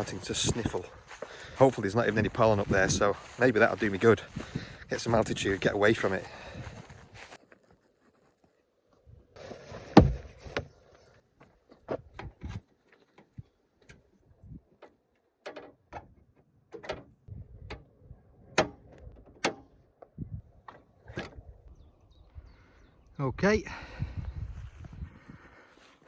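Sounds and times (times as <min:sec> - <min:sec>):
loud thump: 0:09.9 - 0:10.3.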